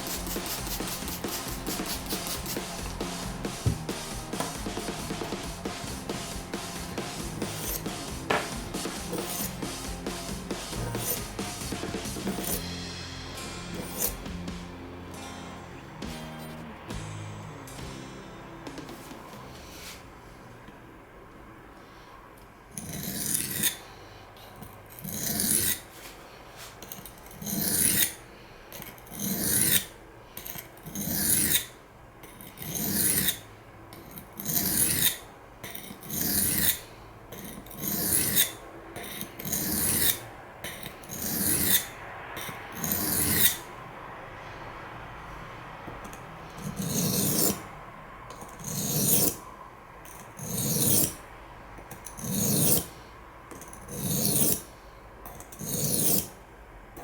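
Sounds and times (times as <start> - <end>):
knife scraping on sharpening stone: 0.0 - 2.8, 7.2 - 9.6, 10.7 - 11.3, 12.3 - 12.6, 13.7 - 14.3, 22.7 - 23.8, 24.5 - 25.9, 26.8 - 43.6, 46.1 - 47.6, 48.3 - 49.4, 50.1 - 51.2, 51.8 - 54.7, 55.3 - 56.4.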